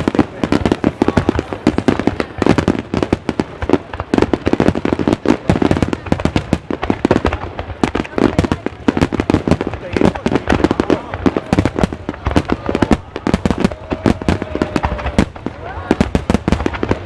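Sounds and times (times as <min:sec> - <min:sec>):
fireworks bangs and crackles: 0:00.0 - 0:17.0.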